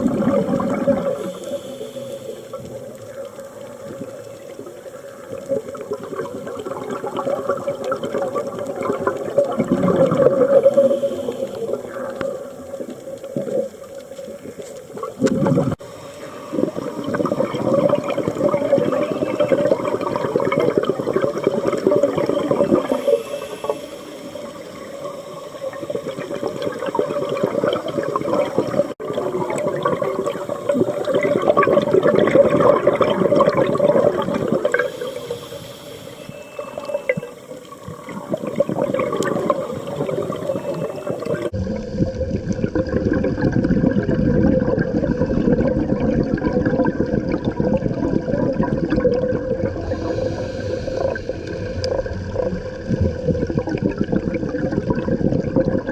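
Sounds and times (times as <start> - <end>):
rush of bubbles: 0.0 - 55.9
diver breathing through regulator: 1.0 - 3.0, 10.4 - 12.4, 22.4 - 25.6, 34.4 - 37.1, 49.7 - 52.2.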